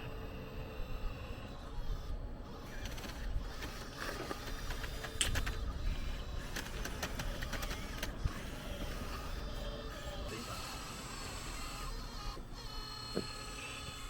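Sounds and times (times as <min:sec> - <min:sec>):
electric hydraulic pump whine: 0:00.0 - 0:14.0
sharp clicks and knocks: 0:02.8 - 0:05.7.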